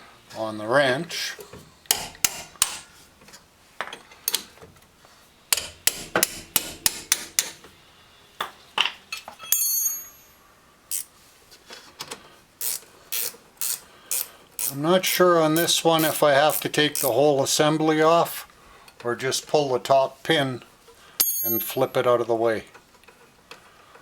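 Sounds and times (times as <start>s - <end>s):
hand tools clinking on metal: 9.1s - 10.4s, 21.2s - 22.2s
high ringing metal clang: 9.3s - 10.4s, 21.2s - 22.0s.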